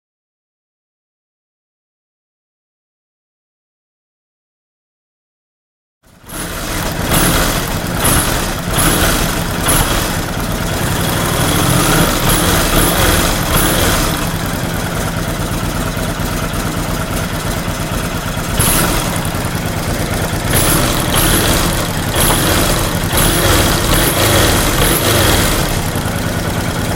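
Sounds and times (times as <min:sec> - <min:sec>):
engine knocking: 0:06.0 - 0:26.9
motorcycle engine running: 0:06.1 - 0:26.9.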